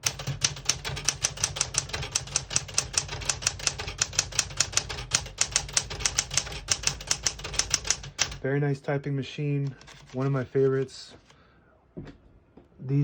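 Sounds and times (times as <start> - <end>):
typewriter keys clacking: 0.0 - 8.4, 9.6 - 10.8.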